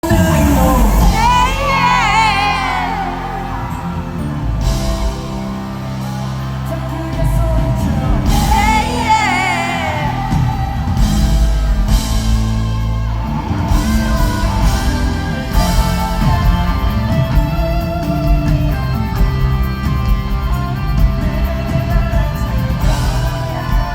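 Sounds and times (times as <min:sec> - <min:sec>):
man singing: 0:00.0 - 0:04.4, 0:06.6 - 0:11.8
live rock band with electric guitar: 0:00.0 - 0:23.9.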